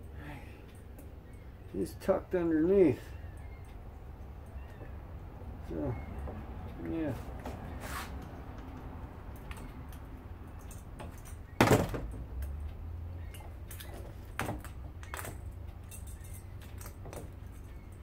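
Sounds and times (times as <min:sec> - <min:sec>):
metal parts clicking and clinking: 0:09.3 - 0:18.0.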